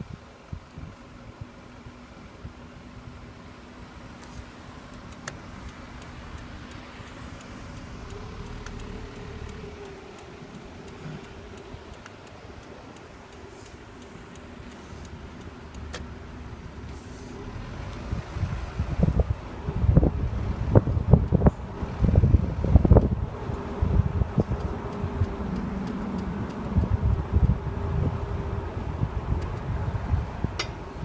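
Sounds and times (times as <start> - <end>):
car engine and road hum: 0.0 - 31.0
low rumbling buffets: 0.0 - 31.0
faint clicks: 4.2 - 18.1, 22.9 - 27.8.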